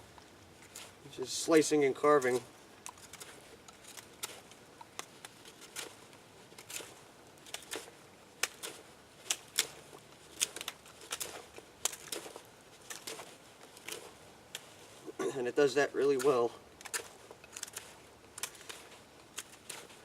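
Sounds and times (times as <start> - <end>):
knife slicing wood: 16.1 - 20.0.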